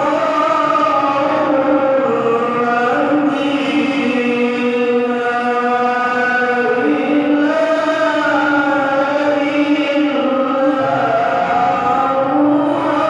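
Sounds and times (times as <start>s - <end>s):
person chanting long held notes: 0.0s - 13.0s.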